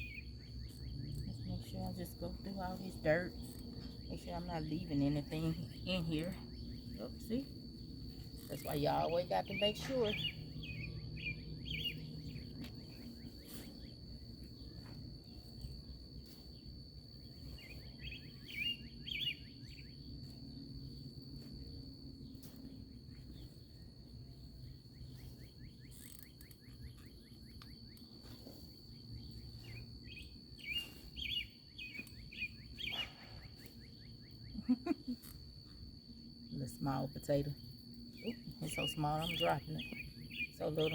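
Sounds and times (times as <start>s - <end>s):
high insect trill: 0.0s - 40.9s
bird chirping: 8.4s - 14.0s, 17.6s - 20.0s, 29.2s - 34.6s, 38.2s - 40.9s.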